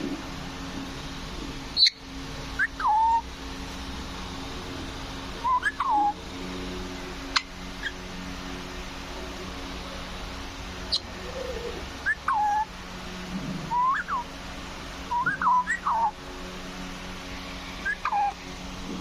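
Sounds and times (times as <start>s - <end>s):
steady low hum: 0.0s - 19.0s
parrot whistled calls: 1.8s - 2.0s, 2.6s - 3.2s, 5.4s - 6.2s, 10.9s - 12.7s, 13.7s - 14.3s, 15.1s - 16.2s, 17.8s - 18.4s.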